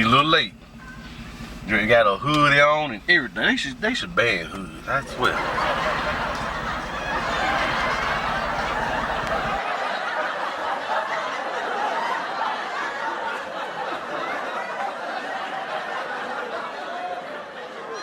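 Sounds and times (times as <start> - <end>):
indistinct talk: 0.0 - 9.6
people chuckling: 4.2 - 18.0.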